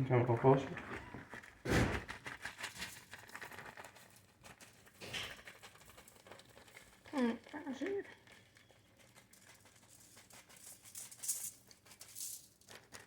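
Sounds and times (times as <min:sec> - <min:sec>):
package rustling: 0:00.2 - 0:09.3.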